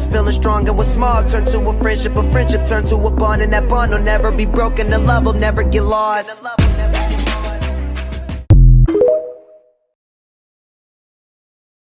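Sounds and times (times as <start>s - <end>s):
song's final note ringing: 8.9s - 9.7s.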